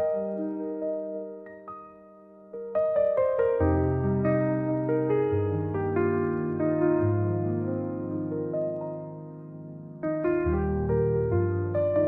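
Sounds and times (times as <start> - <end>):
calm slow piano music: 0.0 - 12.0.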